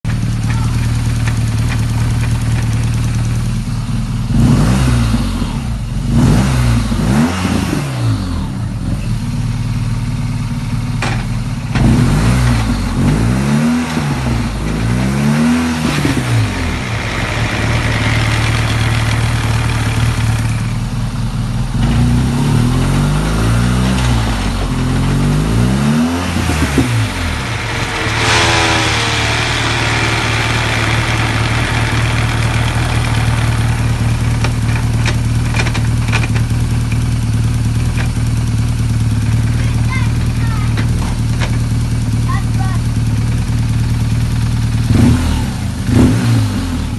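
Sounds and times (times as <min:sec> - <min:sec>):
vehicle engine revving: 0:00.0 - 0:46.9
hissing with falling whine: 0:15.8 - 0:21.2, 0:25.6 - 0:37.0.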